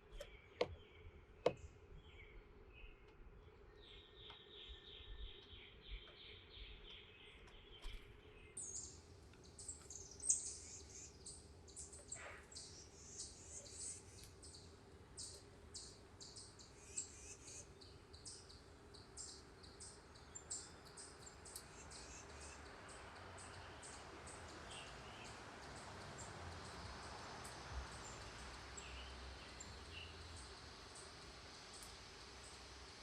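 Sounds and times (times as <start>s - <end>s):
faint bird chirps: 0.0s - 25.4s.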